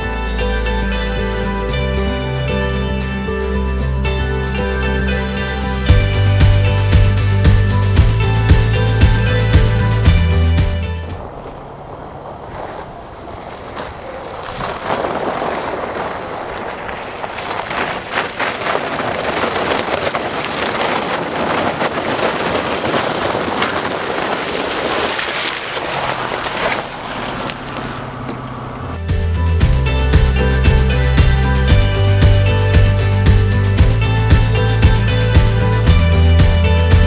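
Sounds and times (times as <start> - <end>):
tyres splashing through puddles: 12.5 - 37.0.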